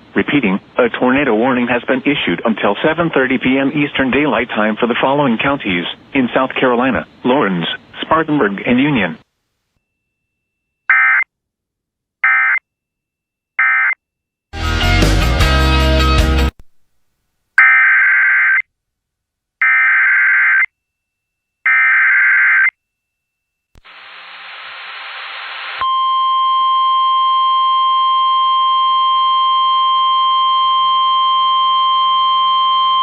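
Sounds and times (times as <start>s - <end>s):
radio static hiss: 0.0s - 9.4s, 23.8s - 25.8s.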